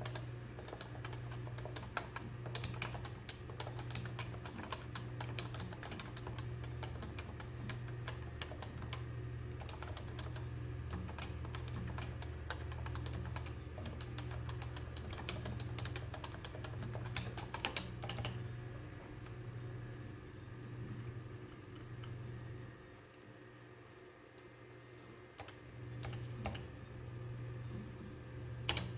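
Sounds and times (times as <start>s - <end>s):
keyboard typing: 0.0s - 18.4s, 25.4s - 26.7s, 28.7s - 28.9s
steady low hum: 0.0s - 28.9s.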